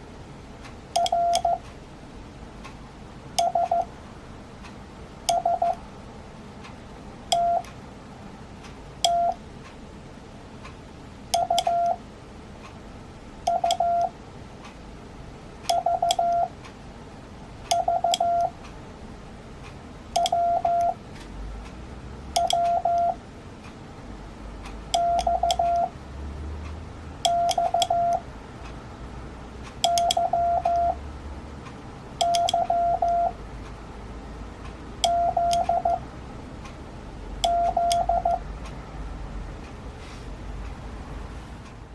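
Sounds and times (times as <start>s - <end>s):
morse code beeps: 1.0s - 1.6s, 3.4s - 3.9s, 5.3s - 5.8s, 7.3s - 7.7s, 9.0s - 9.4s, 11.4s - 12.0s, 13.5s - 14.1s, 15.7s - 16.5s, 17.7s - 18.5s, 20.2s - 21.0s, 22.4s - 23.2s, 25.0s - 25.9s, 27.2s - 28.2s, 29.8s - 31.0s, 32.2s - 33.4s, 35.0s - 36.0s, 37.4s - 38.4s.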